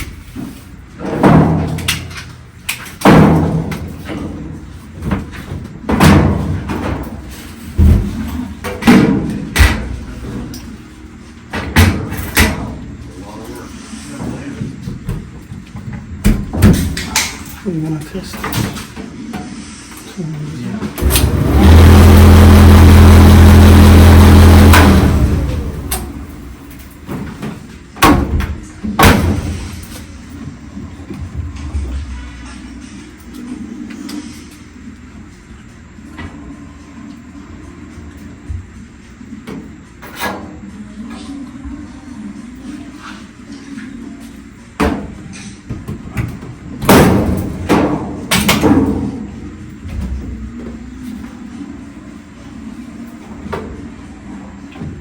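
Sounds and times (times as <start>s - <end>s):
clothes dryer humming: 0.0s - 55.0s
knocks and bangs in dryer: 1.0s - 2.0s, 3.0s - 10.4s, 11.5s - 12.9s, 14.9s - 17.0s, 27.1s - 29.8s, 44.8s - 50.5s.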